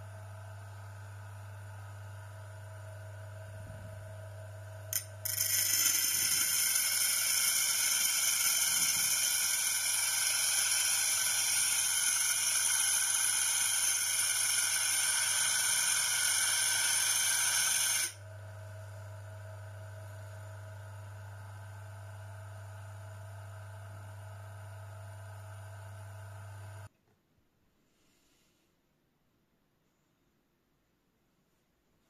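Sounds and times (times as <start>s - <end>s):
power tool grinding hiss: 5.6s - 18.2s.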